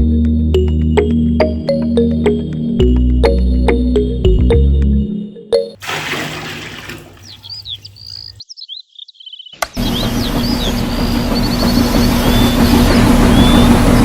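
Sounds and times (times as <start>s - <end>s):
music track: 0.0s - 5.8s
birds chirping: 6.4s - 14.0s.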